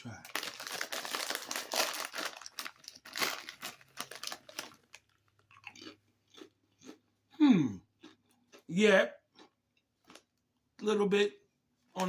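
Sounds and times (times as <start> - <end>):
crunching chip chewing: 0.1 - 7.0.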